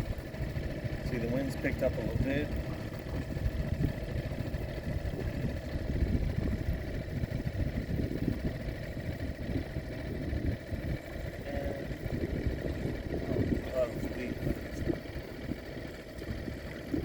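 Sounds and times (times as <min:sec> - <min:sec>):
small boat motor droning: 0:00.0 - 0:17.0
wind buffeting microphone: 0:00.0 - 0:17.0.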